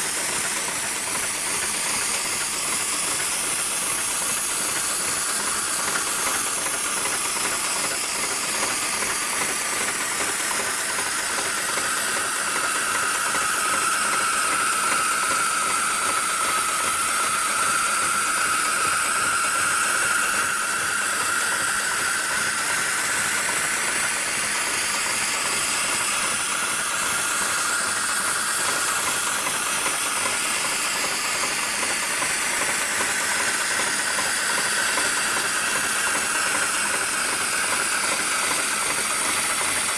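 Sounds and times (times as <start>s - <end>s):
sewing machine running: 0.0s - 39.9s.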